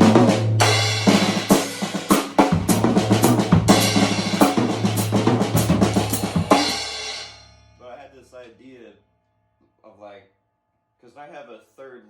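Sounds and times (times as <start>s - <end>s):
drum kit playing fast triplets: 0.0s - 7.6s.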